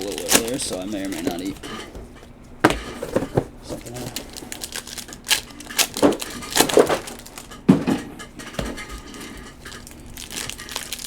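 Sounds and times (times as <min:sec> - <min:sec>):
card packs clicking and knocking: 0:00.0 - 0:11.0
card packs rustling: 0:00.0 - 0:11.0.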